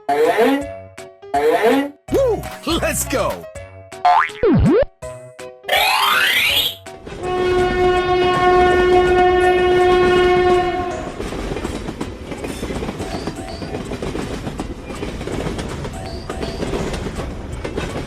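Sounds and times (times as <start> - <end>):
train rumbling on rails: 6.8 - 18.0
train horn blast: 7.1 - 11.2
train wheel clatter: 9.8 - 18.0.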